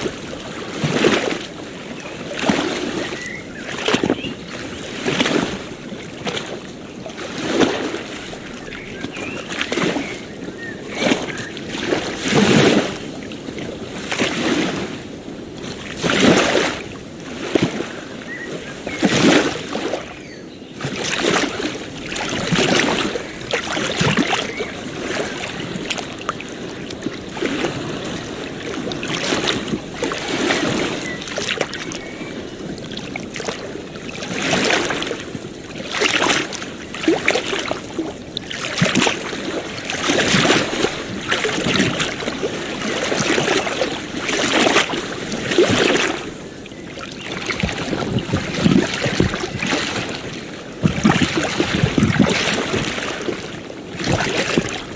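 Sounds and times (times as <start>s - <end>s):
ocean waves splashing on shore: 0.0s - 54.9s.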